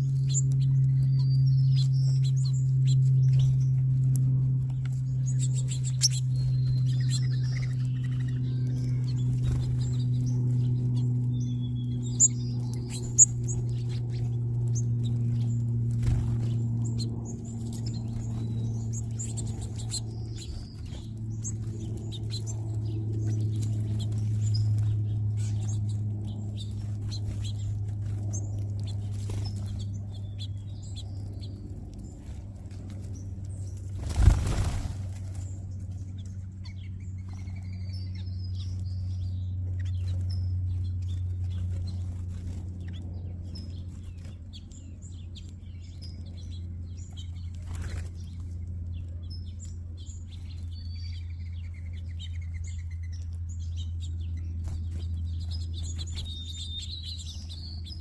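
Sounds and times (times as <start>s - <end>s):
small birds chirping: 0.0s - 58.0s
steady low hum: 0.0s - 58.0s
wings flapping: 3.2s - 11.5s, 12.1s - 36.3s, 40.0s - 44.4s, 47.1s - 48.6s.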